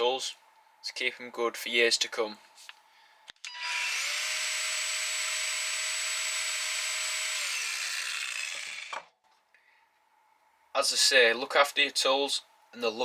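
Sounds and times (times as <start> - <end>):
angle grinder whining: 3.5 - 9.1.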